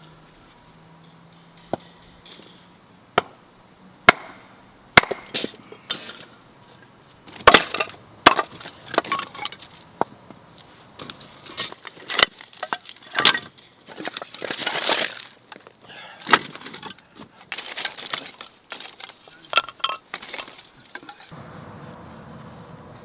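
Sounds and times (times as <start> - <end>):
hard objects knocking and clinking: 7.3 - 9.8, 11.0 - 21.3.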